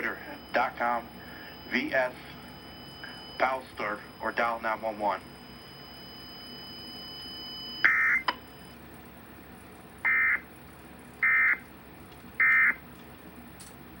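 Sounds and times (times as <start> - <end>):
buzzing data bursts: 0.0 - 8.3
click: 13.0 - 13.8.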